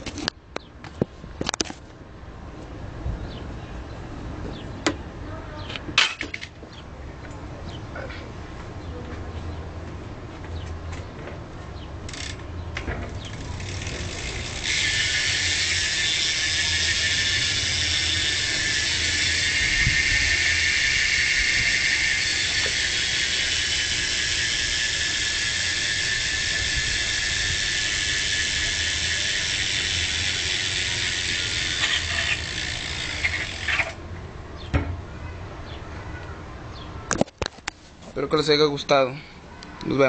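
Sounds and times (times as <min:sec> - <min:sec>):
bicycle hub freewheeling buzz: 0:11.9 - 0:34.1.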